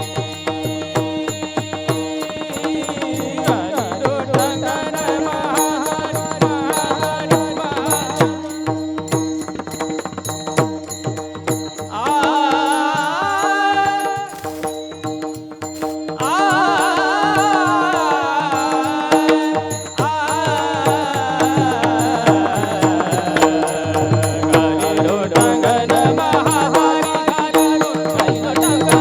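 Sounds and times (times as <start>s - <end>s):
hand drum strokes: 14.2s - 16.4s.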